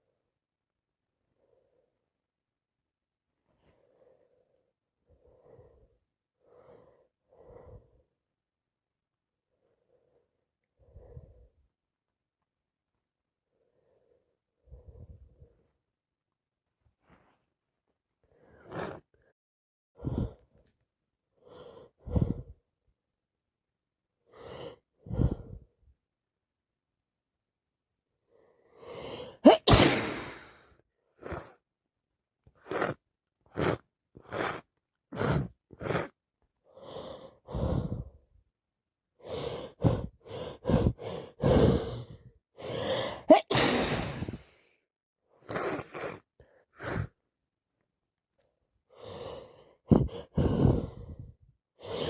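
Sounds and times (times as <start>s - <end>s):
woman gasping breaths: 21.4s - 22.6s, 36.8s - 38.3s, 39.2s - 44.7s, 48.9s - 52.0s
woman sneezing: 29.4s - 30.6s, 43.2s - 44.4s.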